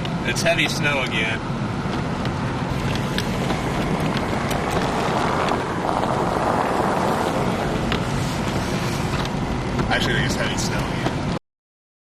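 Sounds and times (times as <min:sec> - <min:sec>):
car driving rumble: 0:00.0 - 0:11.4
wind noise: 0:01.4 - 0:11.4.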